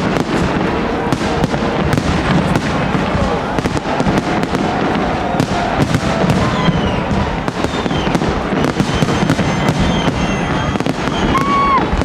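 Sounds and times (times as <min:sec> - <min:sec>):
fireworks bangs and crackles: 0:00.0 - 0:12.0
firework whistles gliding in pitch: 0:03.6 - 0:12.0.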